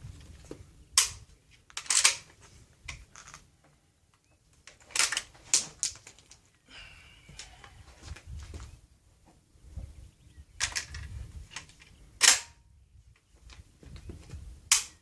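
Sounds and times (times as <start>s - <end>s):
shotgun action clacking: 12.2s - 12.6s.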